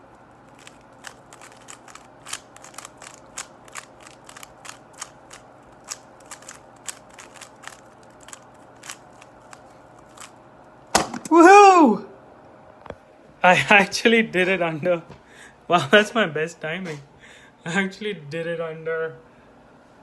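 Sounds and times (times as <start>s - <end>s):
puzzle cube plastic clicks: 0.5s - 10.3s.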